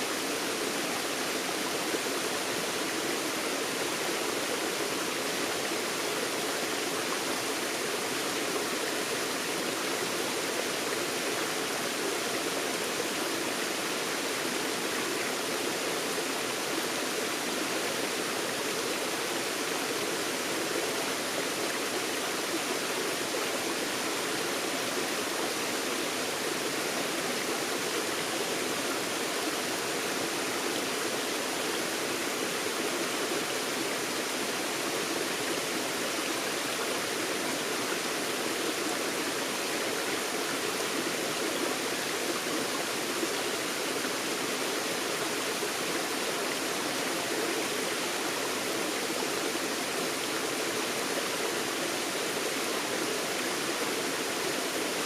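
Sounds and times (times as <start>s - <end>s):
stream flowing over rocks: 0.0s - 55.0s.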